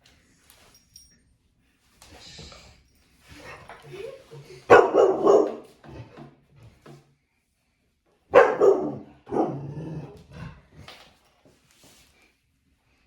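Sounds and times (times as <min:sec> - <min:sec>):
dog barking: 0:04.7 - 0:05.7, 0:08.3 - 0:09.8.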